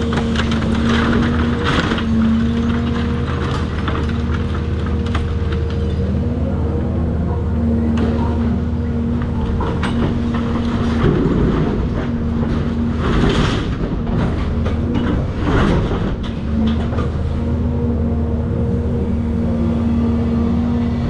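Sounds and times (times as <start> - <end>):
debris crunching and clattering: 0.0 - 6.2, 9.2 - 17.2
excavator diesel engine running: 0.0 - 21.0.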